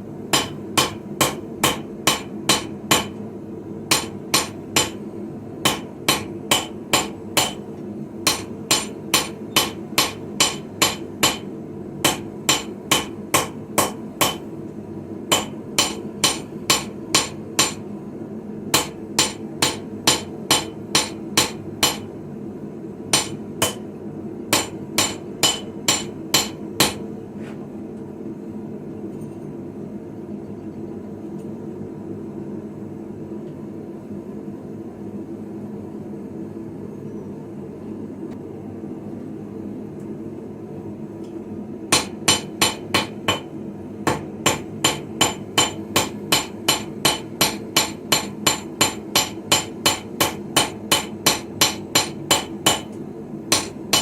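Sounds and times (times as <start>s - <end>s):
steady low hum: 0.0s - 54.0s
hammer striking blade on anvil: 0.4s - 3.2s, 3.9s - 5.0s, 5.7s - 7.6s, 8.3s - 14.5s, 15.3s - 17.8s, 18.8s - 22.1s, 23.2s - 23.8s, 24.5s - 27.0s, 41.9s - 43.5s, 44.1s - 52.9s, 53.5s - 54.0s.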